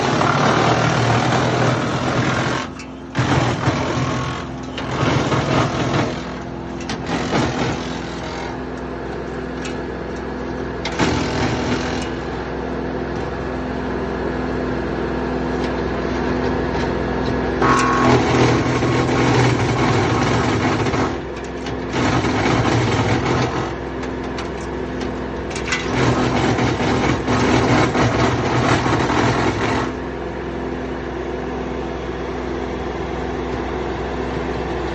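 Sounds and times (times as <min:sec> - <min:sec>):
wood chipper chipping logs: 0:00.0 - 0:34.9
wood chipper engine hum: 0:00.0 - 0:34.9.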